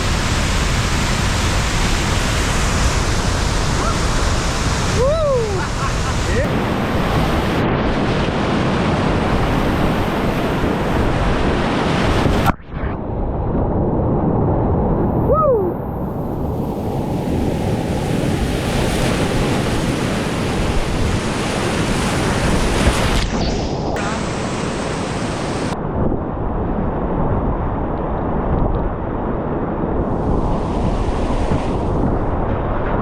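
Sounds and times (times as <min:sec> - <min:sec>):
whitewater rapids rushing: 0:00.0 - 0:07.6
wind on microphone: 0:00.0 - 0:33.0.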